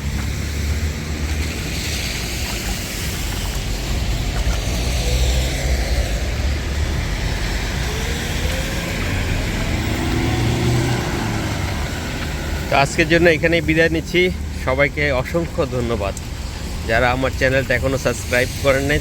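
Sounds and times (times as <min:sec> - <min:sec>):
vehicle engine rising in pitch: 0:00.0 - 0:13.5
low traffic rumble: 0:00.0 - 0:19.0
tyres hissing through water: 0:00.0 - 0:19.0.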